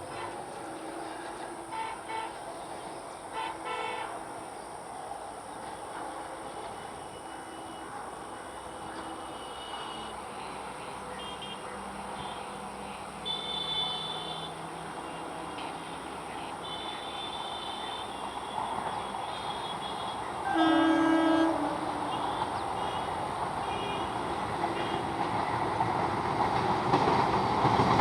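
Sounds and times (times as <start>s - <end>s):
train rumbling: 0.0s - 28.0s
train horn blast: 0.1s - 2.5s, 3.3s - 4.4s, 6.5s - 25.4s.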